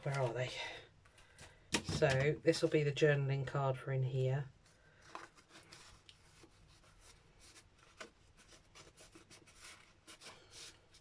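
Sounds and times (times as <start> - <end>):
paper rustling: 4.9 - 11.0.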